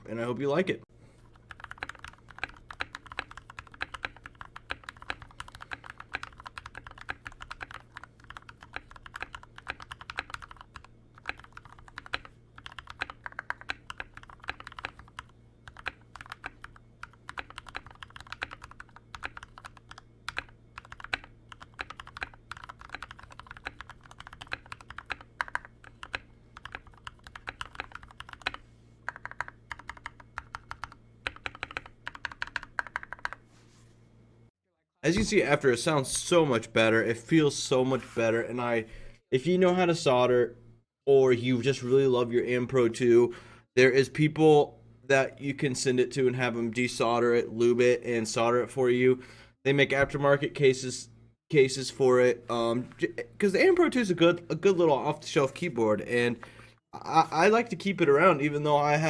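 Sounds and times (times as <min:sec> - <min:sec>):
faint steady hum: 0:00.0 - 0:59.0
mechanical keyboard typing: 0:01.3 - 0:33.4.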